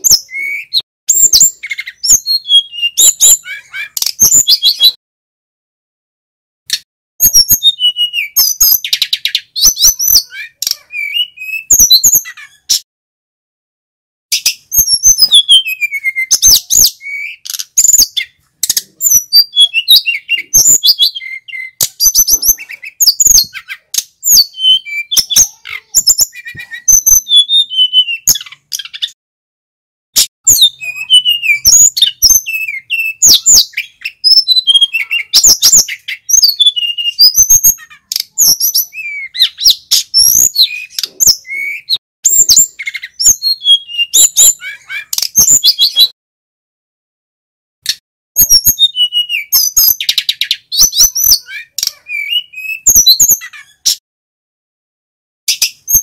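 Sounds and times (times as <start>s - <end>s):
flycatcher singing: 30.4s - 46.1s.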